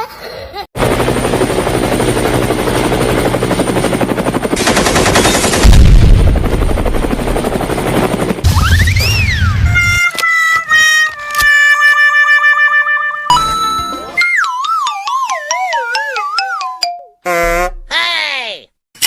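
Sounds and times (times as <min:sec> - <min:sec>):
rising and falling whistle: 0:08.5 - 0:10.1.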